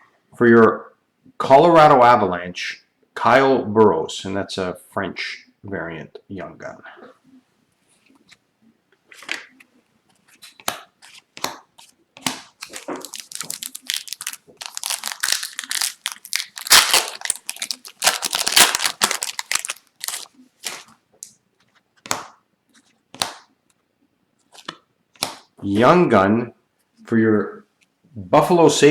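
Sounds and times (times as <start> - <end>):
card packaging crinkling: 12.4 - 20.9.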